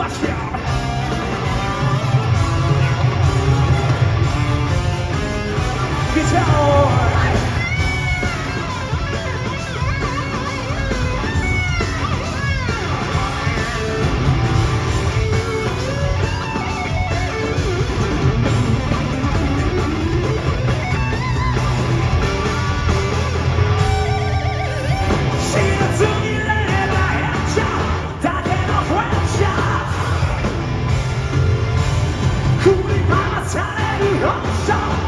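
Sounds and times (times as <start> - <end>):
bass: 0.0 - 35.0
drums: 0.0 - 35.0
electric guitars: 0.0 - 35.0
person singing and shouting: 5.9 - 8.3, 25.3 - 30.6, 32.6 - 35.0.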